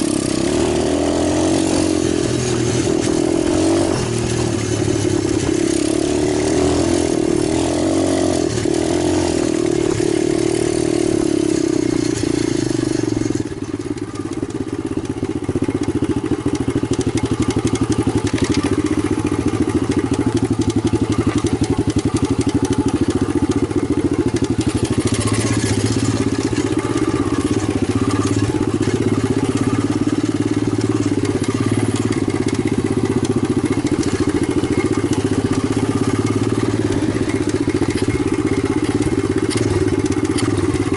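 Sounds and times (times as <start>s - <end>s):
pit bike engine running: 0.0s - 40.9s.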